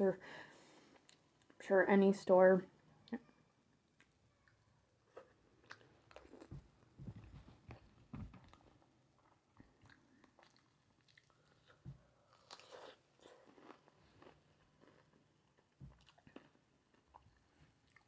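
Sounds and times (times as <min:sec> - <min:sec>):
close-up chewing food: 0:03.9 - 0:18.0.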